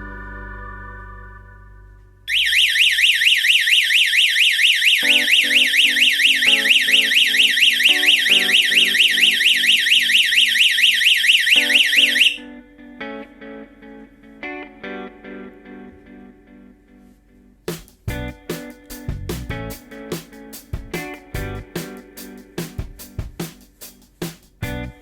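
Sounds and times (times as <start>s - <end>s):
security alarm siren warbling: 0.0s - 12.4s.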